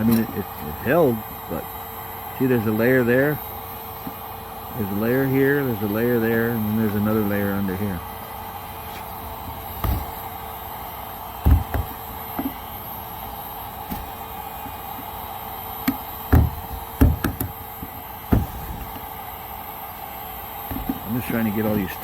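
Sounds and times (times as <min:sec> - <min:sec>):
steady hum: 0:00.0 - 0:22.0
plastic patching pried off hull: 0:09.4 - 0:10.3, 0:11.4 - 0:12.6, 0:13.8 - 0:15.1, 0:15.8 - 0:19.1, 0:20.7 - 0:21.1.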